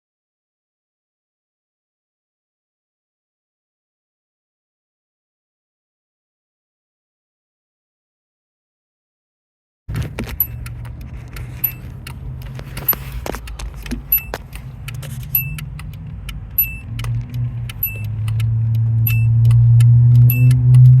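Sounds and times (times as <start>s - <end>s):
car engine running: 9.9s - 21.0s
sharp ticking: 10.0s - 21.0s.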